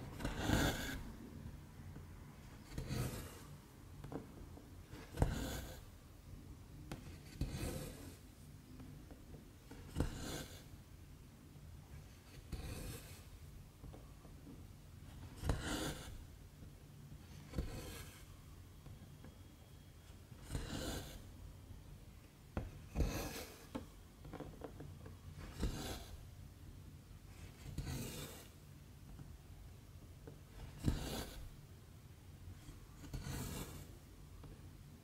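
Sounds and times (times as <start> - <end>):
thread rasping through fabric: 0.1 - 1.1, 12.2 - 13.3.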